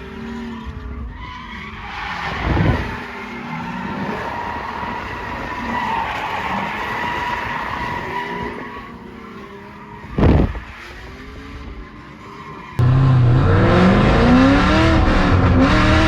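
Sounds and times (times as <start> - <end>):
tires squealing: 0.0 - 16.0
car engine revving: 12.8 - 16.0.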